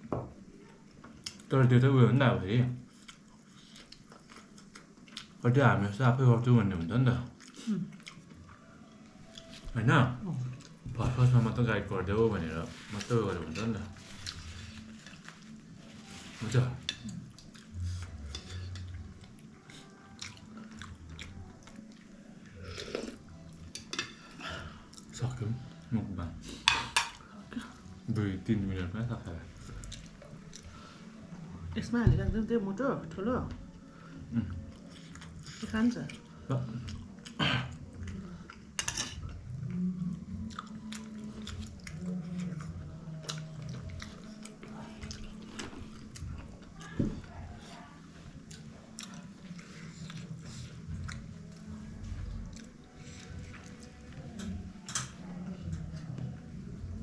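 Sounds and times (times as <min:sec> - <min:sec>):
chewing: 0:02.9 - 0:05.4, 0:07.1 - 0:09.7, 0:12.7 - 0:25.9, 0:29.6 - 0:31.4, 0:34.5 - 0:56.5.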